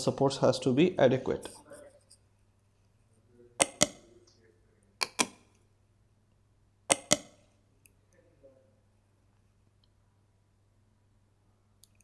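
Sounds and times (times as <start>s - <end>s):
computer mouse double-clicks: 3.6s - 4.0s, 5.0s - 5.4s, 6.9s - 7.4s.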